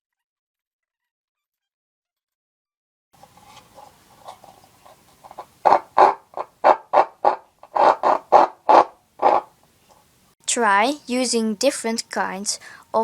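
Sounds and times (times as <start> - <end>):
paper cup noisemaker squawking: 3.2 - 9.6.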